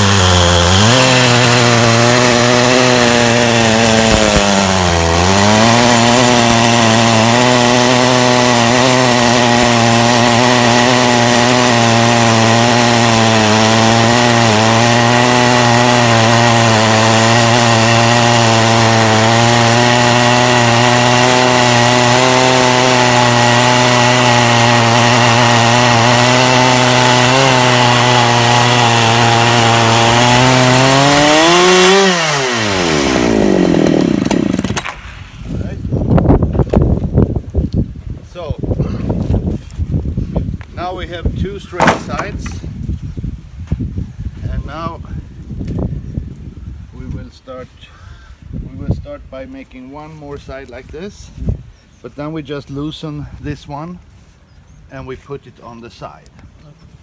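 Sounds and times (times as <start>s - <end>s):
chainsaw cutting log: 0.0s - 37.2s, 40.7s - 42.9s.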